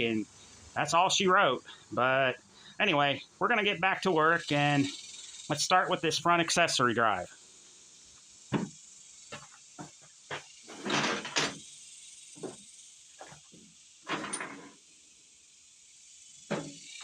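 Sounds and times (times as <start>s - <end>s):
insects hissing: 0.0s - 17.0s
tools clattering scrapes: 10.3s - 11.6s, 14.1s - 14.8s.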